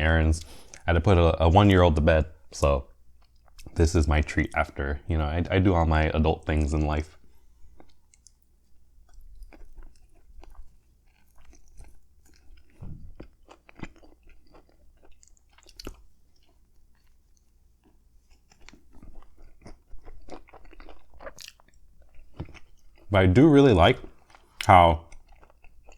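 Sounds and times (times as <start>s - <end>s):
person chewing wetly: 0.4s - 1.0s, 3.1s - 3.9s, 7.1s - 25.9s.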